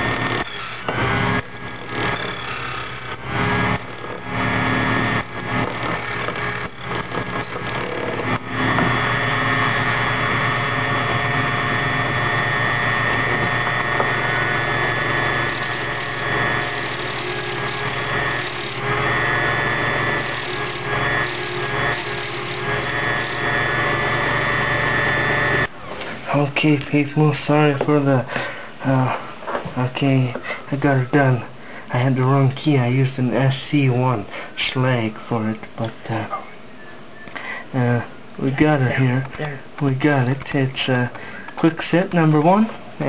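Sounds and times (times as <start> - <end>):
key-cutting machine cutting: 0.0 - 25.7.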